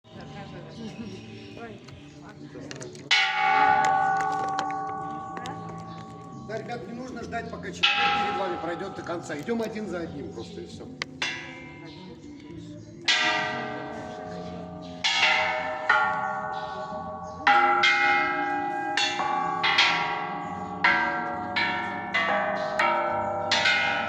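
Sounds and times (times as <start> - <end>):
temple bells ringing: 3.1 - 10.4, 11.2 - 11.9, 13.0 - 24.0.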